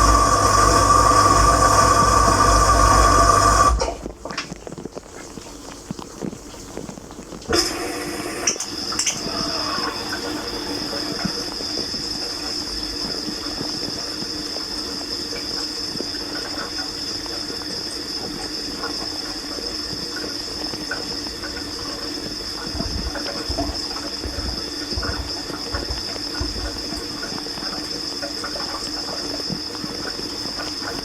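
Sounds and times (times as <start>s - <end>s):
water spraying: 0.0s - 4.3s
pump humming: 0.0s - 4.4s, 7.5s - 31.0s.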